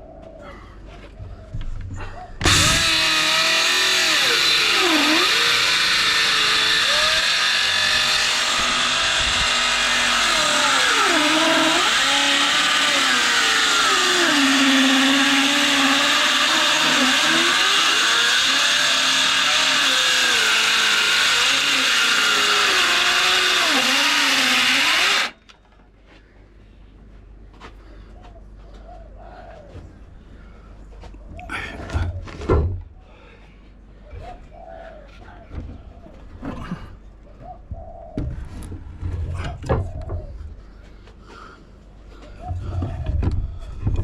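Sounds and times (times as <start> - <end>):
electric saw cutting wood: 2.4 - 25.4.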